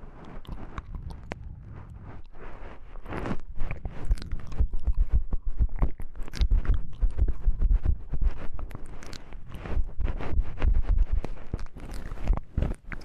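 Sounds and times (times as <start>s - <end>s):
soft low thumps: 0.4s - 8.8s, 9.4s - 12.6s
crisp clicking and tapping: 3.1s - 13.0s.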